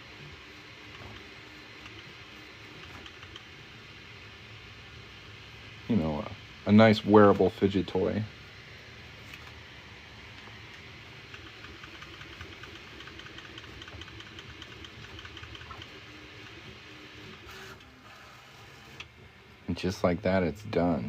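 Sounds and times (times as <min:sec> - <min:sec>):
printer mechanical hum: 0:00.0 - 0:21.0
print head ticking: 0:00.8 - 0:03.6, 0:11.1 - 0:17.4.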